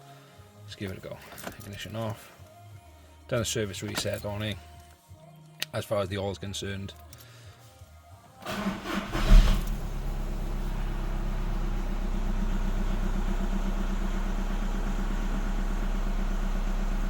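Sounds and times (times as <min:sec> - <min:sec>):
diesel engine cranking on starter: 0:08.4 - 0:17.0
diesel engine idling: 0:08.5 - 0:17.0.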